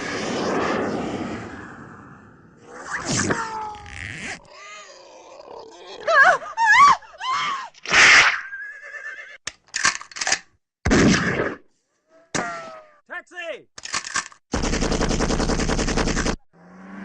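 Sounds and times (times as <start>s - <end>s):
creature-like cries: 3.3s - 7.6s
sharp cracks: 13.8s - 16.4s.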